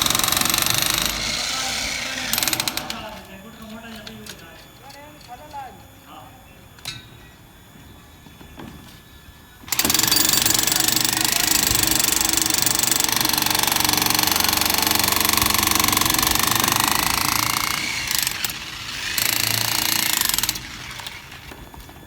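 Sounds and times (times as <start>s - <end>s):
jackhammer breaking concrete: 0.0s - 3.1s, 9.7s - 21.6s.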